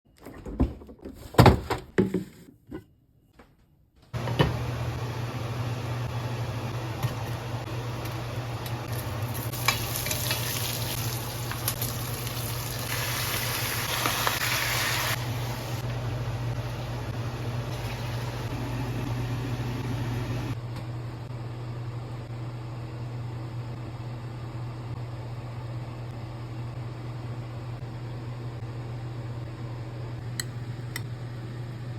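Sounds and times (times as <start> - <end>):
squid sizzling in a pan: 9.0 - 15.2.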